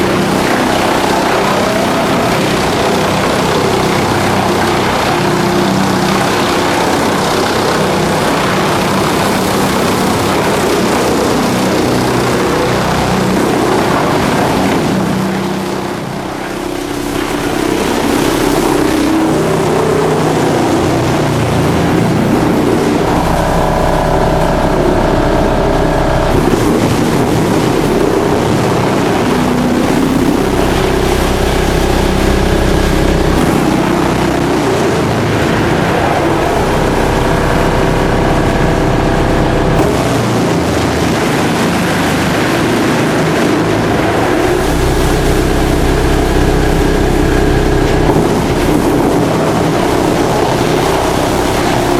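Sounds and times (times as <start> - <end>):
high whining tone: 0.0 - 41.3, 43.2 - 51.9
wood chipper running: 0.0 - 51.9.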